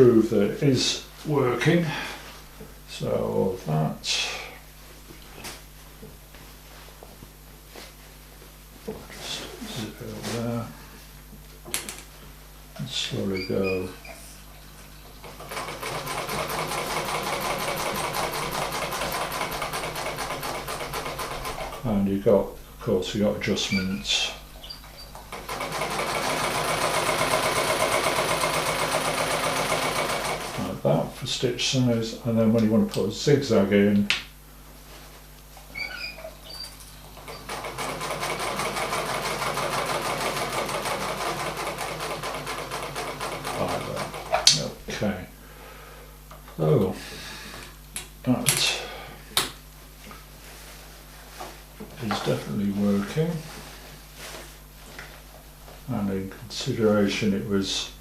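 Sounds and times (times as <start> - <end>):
sewing machine clattering: 15.2 - 21.8, 25.1 - 30.6, 36.6 - 44.6.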